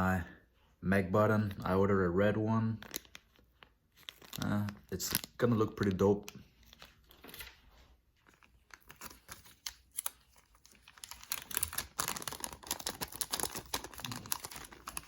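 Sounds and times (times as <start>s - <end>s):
packaging clicking and crinkling: 2.8s - 7.6s, 8.2s - 15.0s.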